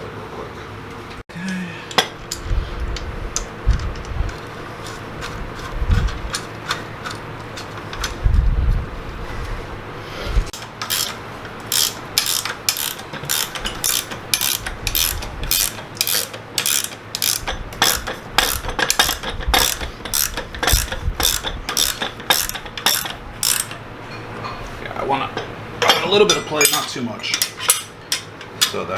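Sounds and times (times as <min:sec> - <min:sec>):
ratchet wrench clicking: 0:10.6 - 0:23.8.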